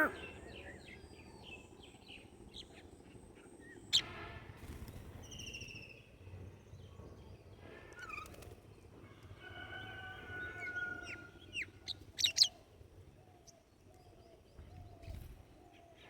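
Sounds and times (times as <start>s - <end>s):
small birds chirping: 10.5s - 15.9s.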